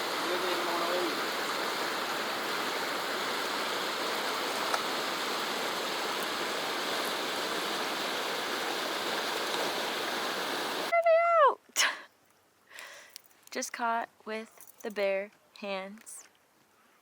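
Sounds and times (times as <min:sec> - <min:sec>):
stream water rushing: 0:00.0 - 0:10.9.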